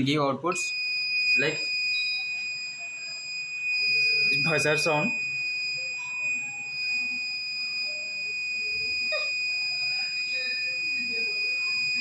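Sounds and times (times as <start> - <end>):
high-pitched alarm buzzer tone: 0.6 - 12.0.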